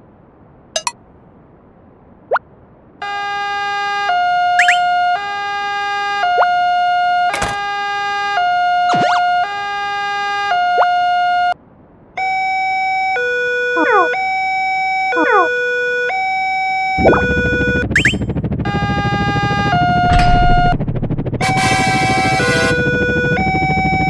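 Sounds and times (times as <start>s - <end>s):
two-tone electronic siren: 3.0s - 11.6s, 12.2s - 24.0s
whistling pitch sweeps: 4.6s - 4.9s, 17.0s - 18.3s.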